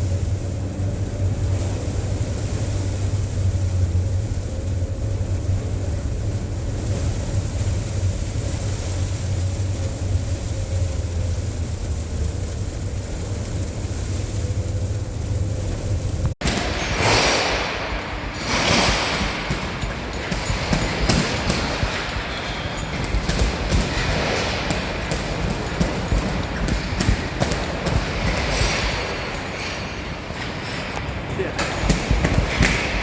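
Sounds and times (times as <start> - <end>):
strong wind buffeting microphone: 0.0 - 24.7.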